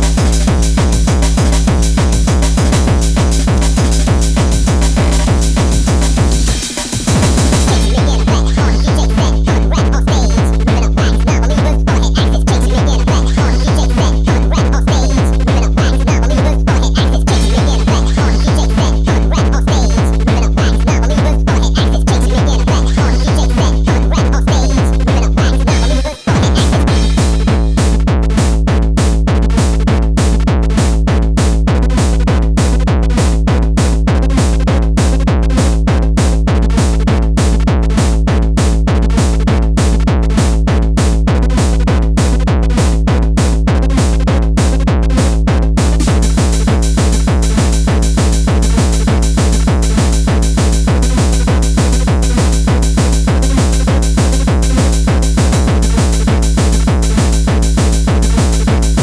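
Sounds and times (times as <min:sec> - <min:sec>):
hi-hats: 0:00.0 - 0:09.2, 0:17.3 - 0:18.8, 0:25.7 - 0:28.1, 0:45.8 - 0:59.0
distorted kick drum pounding: 0:00.0 - 0:59.0.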